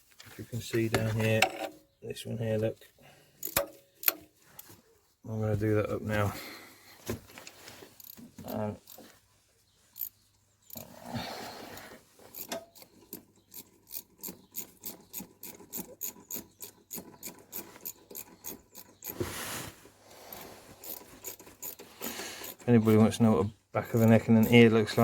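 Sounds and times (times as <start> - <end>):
hand ratchet clicking: 3.4 - 4.2, 11.8 - 19.2, 20.3 - 22.7, 23.8 - 25.0
rustling: 19.0 - 22.5.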